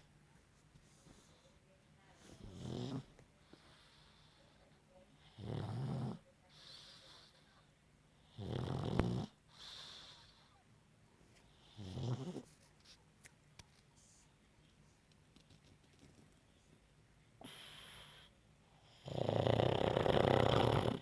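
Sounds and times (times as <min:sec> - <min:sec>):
soft hissy breath: 0:00.0 - 0:05.4, 0:06.3 - 0:08.4, 0:09.4 - 0:11.8, 0:12.4 - 0:19.0
dog snoring: 0:02.4 - 0:04.0, 0:05.2 - 0:07.3, 0:08.2 - 0:10.4, 0:11.6 - 0:12.5, 0:17.4 - 0:21.0.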